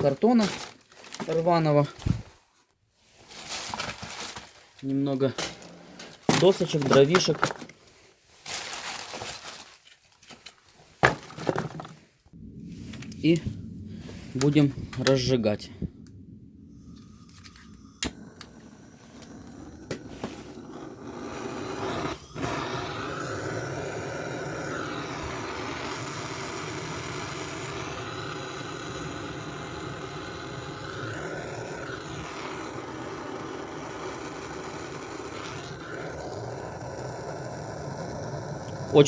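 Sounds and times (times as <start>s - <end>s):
rushing torch flame: 12.3s - 39.0s
gas torch hissing: 17.0s - 39.0s.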